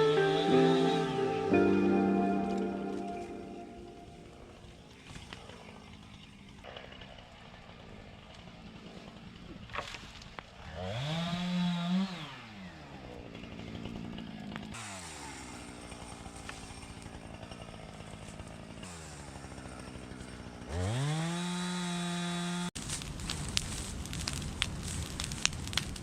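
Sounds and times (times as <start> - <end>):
chainsaw revving: 4.7 - 9.7, 10.6 - 22.8.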